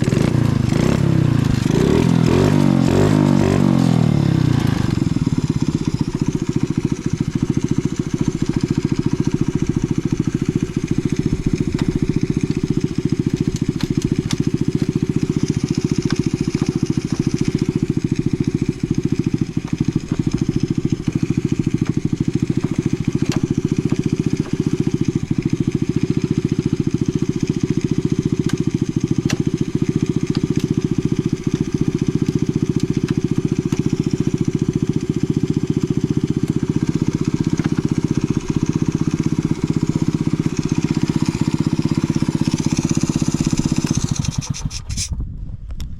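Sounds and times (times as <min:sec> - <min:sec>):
minibike engine idling: 0:00.0 - 0:45.0.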